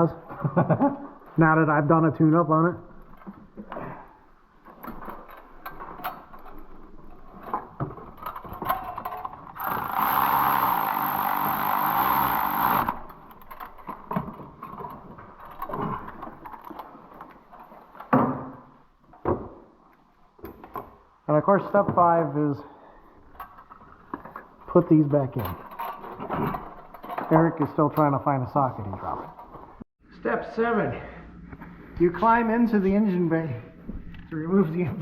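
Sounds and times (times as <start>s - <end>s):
hand tools clicking and knocking: 4.6s - 18.5s, 23.2s - 28.2s.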